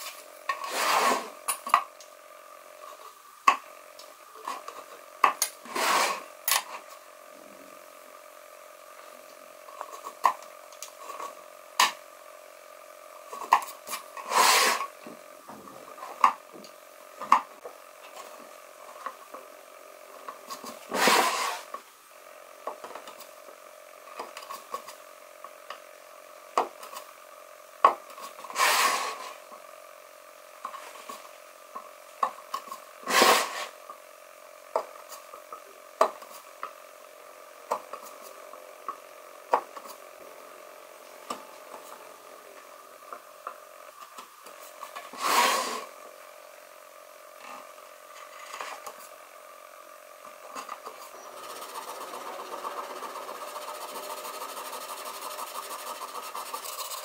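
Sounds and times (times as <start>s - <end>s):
noisy tool strokes on wood: 0.0s - 1.4s, 5.6s - 6.4s, 13.2s - 15.1s, 20.3s - 21.8s, 28.2s - 29.5s, 33.0s - 33.8s, 44.6s - 46.0s, 50.6s - 57.0s
faint steady hum: 0.0s - 57.0s.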